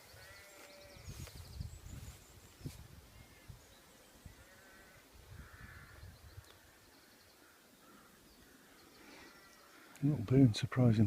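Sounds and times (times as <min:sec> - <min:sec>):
distant sheep bleat: 0:00.1 - 0:01.1, 0:04.3 - 0:06.0
wind rumble on microphone: 0:01.0 - 0:03.7.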